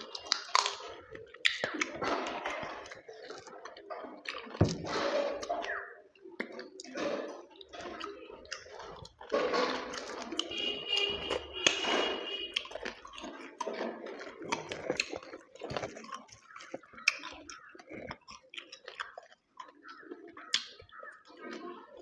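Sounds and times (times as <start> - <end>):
wet smacking: 0.0 - 21.6
chewing: 0.0 - 22.0.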